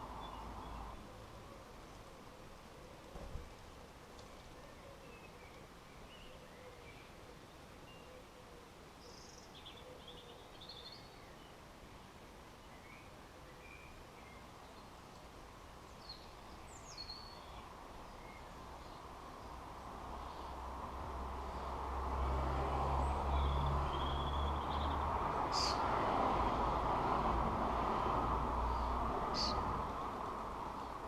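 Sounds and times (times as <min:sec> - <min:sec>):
outdoor background hiss: 0:00.0 - 0:31.0
birds chirping: 0:23.0 - 0:25.9, 0:28.7 - 0:31.0.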